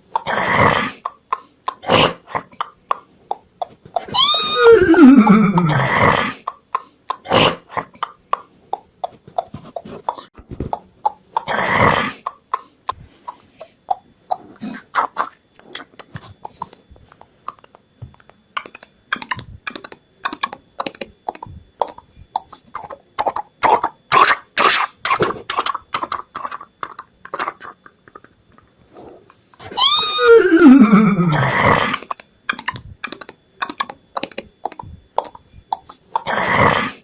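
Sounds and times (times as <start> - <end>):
horse whinnying: 4.0 - 6.2, 29.6 - 32.0.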